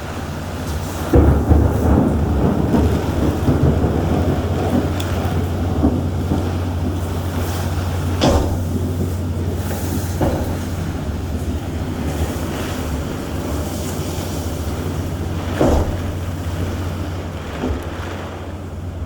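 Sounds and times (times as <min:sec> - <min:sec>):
rain and wind rushing: 0:00.0 - 0:19.0
short thumps: 0:05.8 - 0:18.5.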